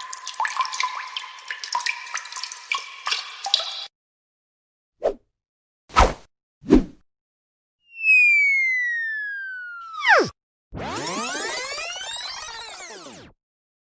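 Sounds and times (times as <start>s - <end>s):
water dripping plinks: 0.0s - 3.9s.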